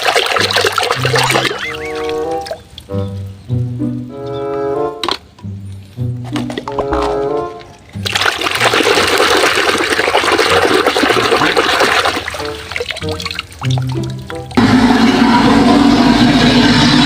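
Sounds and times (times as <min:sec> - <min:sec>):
rushing water: 0:00.0 - 0:04.0, 0:06.7 - 0:14.6
short musical notes: 0:01.0 - 0:08.2.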